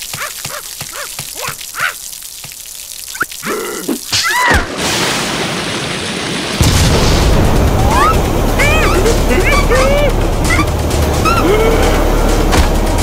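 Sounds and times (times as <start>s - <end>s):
water drip plinks: 0.0s - 4.5s
loud rush of noise: 4.8s - 13.0s
squeaky cartoon voice: 7.9s - 11.5s.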